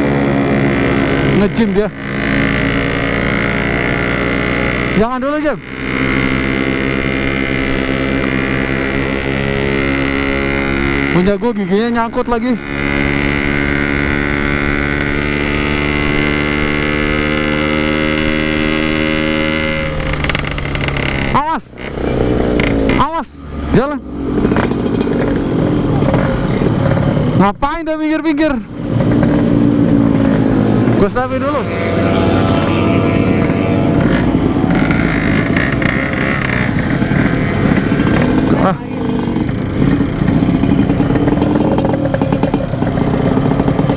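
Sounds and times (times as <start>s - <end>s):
motorcycle engine high revs: 0.0s - 43.9s
riding noise at speed: 0.0s - 43.9s.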